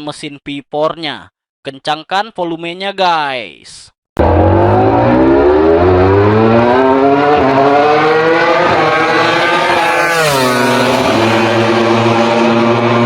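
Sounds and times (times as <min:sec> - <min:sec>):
racing engine revving: 0:04.2 - 0:13.0.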